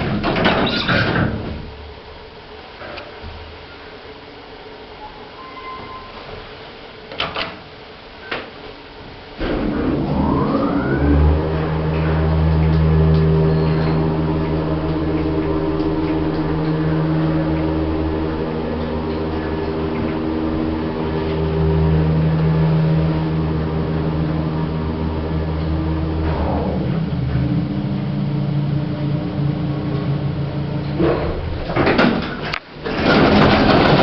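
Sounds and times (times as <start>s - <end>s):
lift machinery humming: 9.0s - 34.0s.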